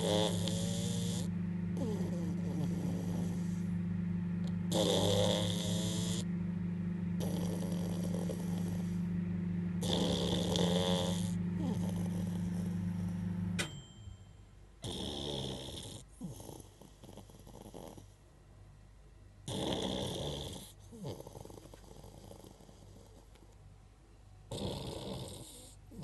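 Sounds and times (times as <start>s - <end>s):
dog snoring: 0.0s - 3.8s, 4.4s - 6.3s, 7.1s - 9.1s, 9.8s - 13.3s, 14.8s - 18.2s, 19.4s - 23.6s, 24.5s - 26.0s
steady low hum: 0.0s - 15.0s
sharp click: 13.6s - 14.0s.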